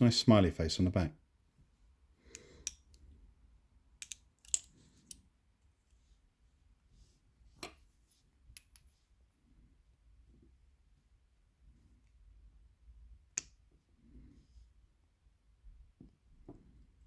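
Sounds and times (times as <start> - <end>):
metal lock parts clicking: 4.0 - 5.2.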